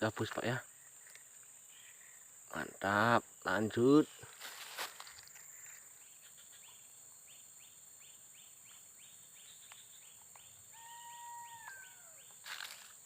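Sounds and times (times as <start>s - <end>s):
high insect drone: 0.0s - 13.0s
whistled bird call: 10.4s - 12.4s.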